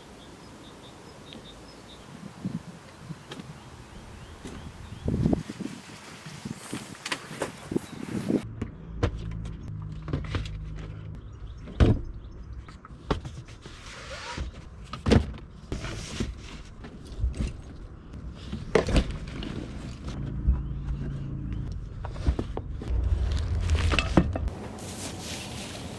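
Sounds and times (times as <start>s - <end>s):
low steady hum: 20.4s - 25.9s.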